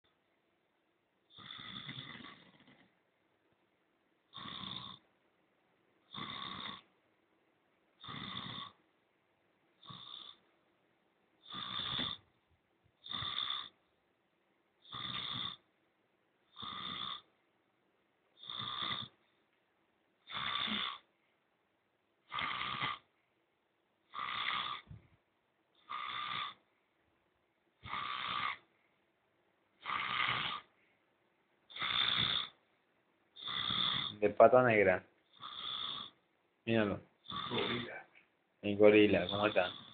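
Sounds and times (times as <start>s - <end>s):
man snoring loudly: 1.3s - 2.7s, 4.3s - 5.0s, 6.1s - 6.8s, 8.0s - 8.8s, 9.8s - 10.4s, 11.4s - 12.2s, 13.0s - 13.7s, 14.8s - 15.6s, 16.5s - 17.3s, 18.4s - 19.1s, 20.3s - 21.1s, 22.3s - 23.0s, 24.1s - 24.9s, 25.8s - 26.6s, 27.8s - 28.6s, 29.8s - 30.7s, 31.7s - 32.6s, 33.4s - 34.4s, 35.3s - 36.2s, 37.2s - 38.0s, 39.1s - 39.9s.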